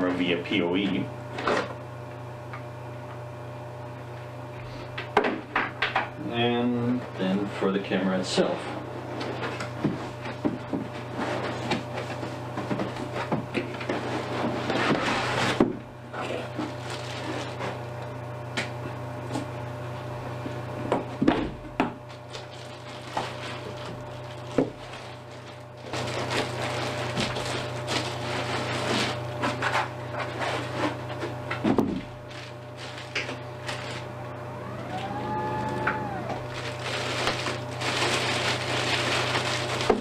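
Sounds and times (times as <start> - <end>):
steady low hum: 0.0 - 40.0
packing material rustling: 16.6 - 17.8, 22.1 - 29.6, 32.0 - 40.0
cardboard box knocks and thuds: 31.6 - 32.1.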